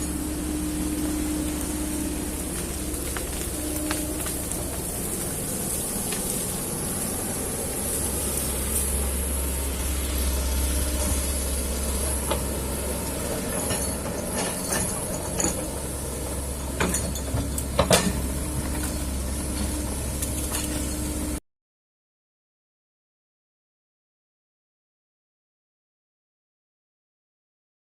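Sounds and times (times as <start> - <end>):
excavator diesel engine running: 0.0 - 21.4.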